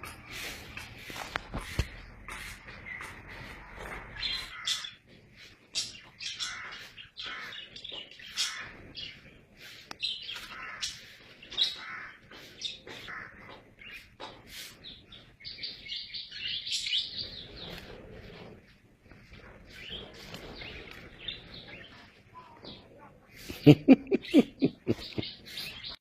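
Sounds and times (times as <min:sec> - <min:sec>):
high chirping calls: 0:01.8 - 0:18.0, 0:23.5 - 0:26.0.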